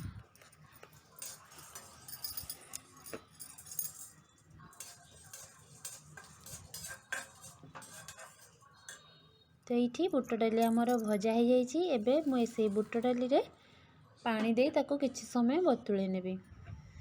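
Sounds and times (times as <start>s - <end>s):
metal spoon scraping a pan: 0.0s - 9.2s, 11.9s - 13.2s
sizzling in hot oil: 4.8s - 8.7s.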